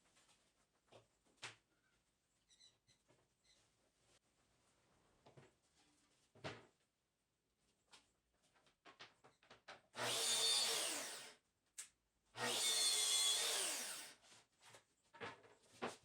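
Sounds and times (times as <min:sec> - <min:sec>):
power tool on wood: 0:10.0 - 0:11.4, 0:12.4 - 0:14.2.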